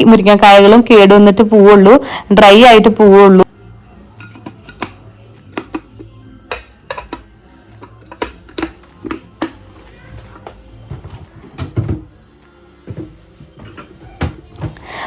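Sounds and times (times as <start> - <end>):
soft background music: 0.0 - 15.0
kitchen utensils clicking and clattering: 4.2 - 12.1.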